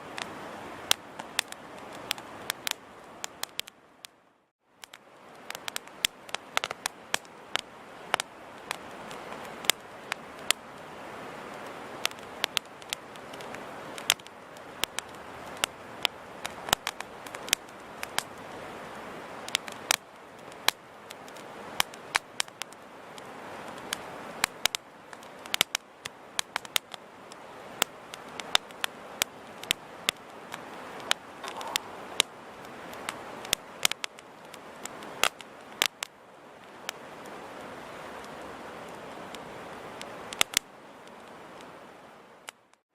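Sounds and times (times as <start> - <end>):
campfire crackling: 0.0 - 42.8.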